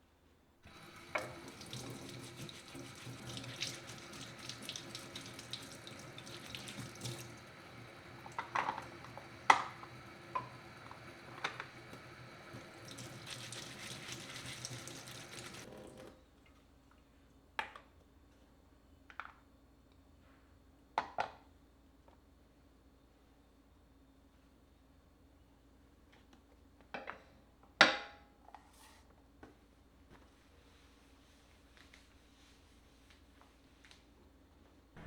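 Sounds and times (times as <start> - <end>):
tap water running into sink: 0.7 - 16.2.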